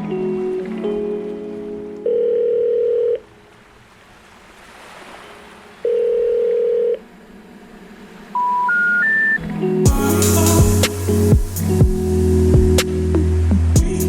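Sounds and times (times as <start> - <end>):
telephone-style tones in music: 0.1 - 3.2, 8.4 - 14.0
soft hiss: 9.9 - 13.6.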